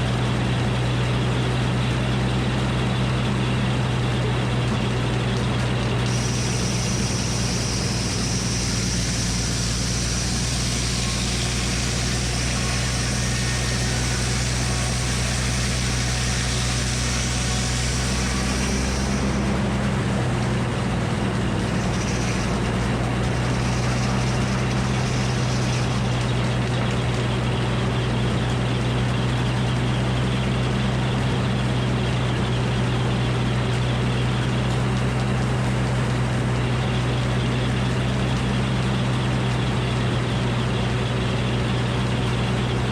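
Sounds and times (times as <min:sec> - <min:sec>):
sawmill engine droning: 0:00.0 - 0:42.9
high-pitched saw noise: 0:06.1 - 0:20.3, 0:21.5 - 0:26.5.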